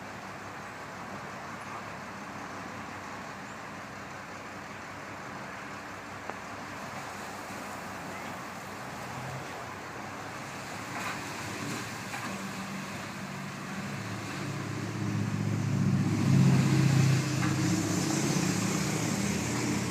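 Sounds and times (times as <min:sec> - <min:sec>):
backhoe engine running: 0:17.1 - 0:19.9.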